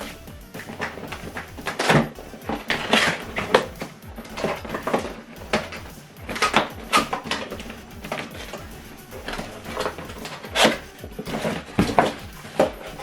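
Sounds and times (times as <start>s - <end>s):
background music: 0.0s - 13.0s
cardboard knocks and scrapes: 9.2s - 13.0s.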